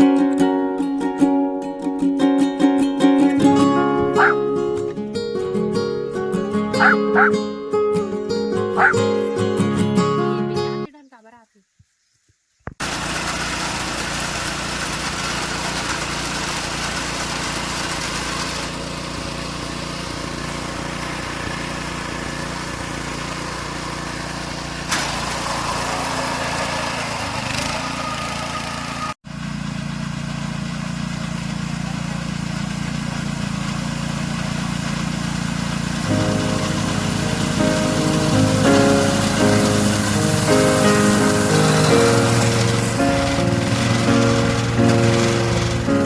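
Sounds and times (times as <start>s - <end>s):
harvester engine running: 3.4s - 5.0s, 6.8s - 7.3s, 8.8s - 9.1s, 12.8s - 46.0s.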